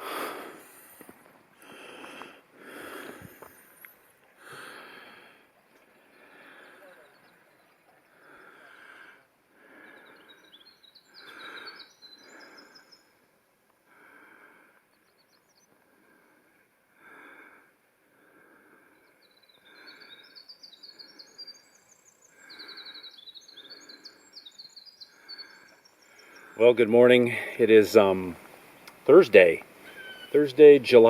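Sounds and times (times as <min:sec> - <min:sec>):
songbird singing: 0:01.8 - 0:13.6, 0:14.8 - 0:16.3, 0:18.6 - 0:31.0.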